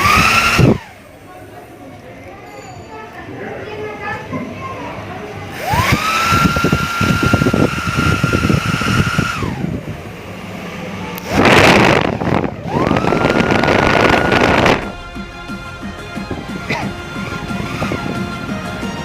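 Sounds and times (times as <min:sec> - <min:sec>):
small motor whining: 0:00.0 - 0:01.2, 0:05.5 - 0:15.1
short loud rushing noise: 0:11.2 - 0:19.0.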